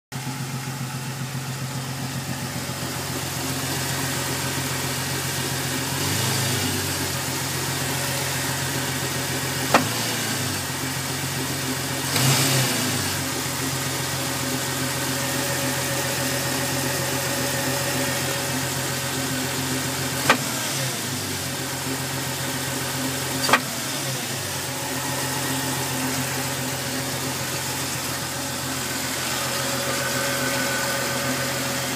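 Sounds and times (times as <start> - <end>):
car engine idling with knock: 0.2 - 31.9
engine revving: 2.4 - 31.9
sharp engine knocks: 9.7 - 10.0, 23.4 - 23.8.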